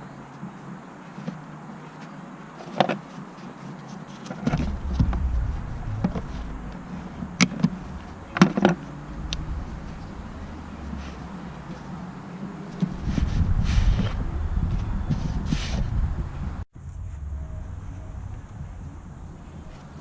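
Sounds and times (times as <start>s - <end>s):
steady low hum: 4.5s - 13.6s, 16.2s - 20.0s
low rumble: 4.5s - 15.1s, 16.4s - 20.0s.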